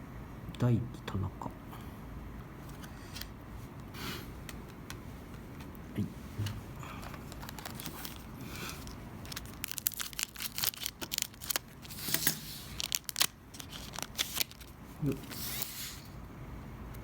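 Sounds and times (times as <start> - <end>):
cards rustling and clicking: 2.7 - 3.3, 6.4 - 16.0
wrapper crinkling: 7.0 - 15.8.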